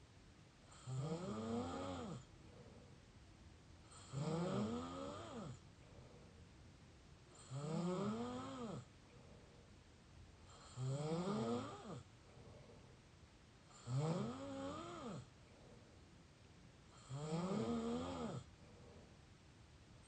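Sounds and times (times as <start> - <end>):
person snoring: 0.7 - 2.3, 3.9 - 5.6, 7.4 - 8.9, 10.5 - 12.0, 13.7 - 15.3, 17.0 - 18.5.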